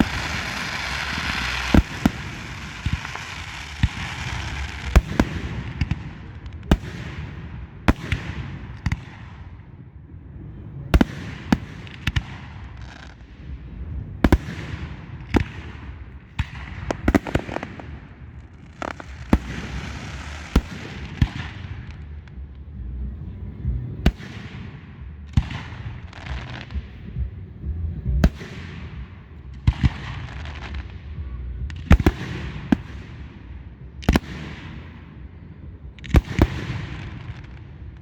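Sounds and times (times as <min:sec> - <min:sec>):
crackling hiss: 0:00.0 - 0:09.0, 0:14.2 - 0:22.6
firework bangs: 0:00.0 - 0:09.8, 0:10.5 - 0:22.6, 0:23.5 - 0:27.4, 0:28.2 - 0:38.0.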